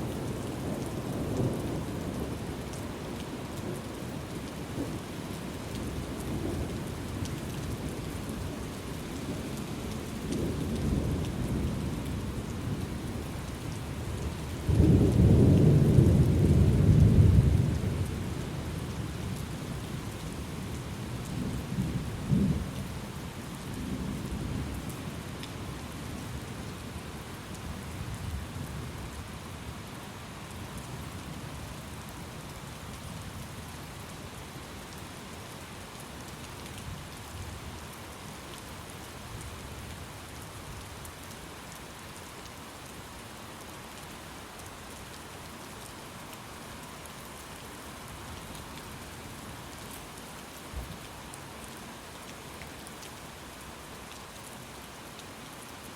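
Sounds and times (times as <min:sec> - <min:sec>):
steady rain: 0:00.0 - 0:55.9.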